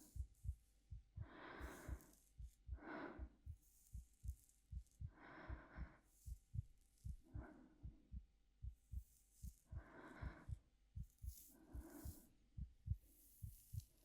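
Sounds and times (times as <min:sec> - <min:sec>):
heartbeat thumping: 0:00.0 - 0:14.0
woman breathing softly: 0:00.0 - 0:14.0.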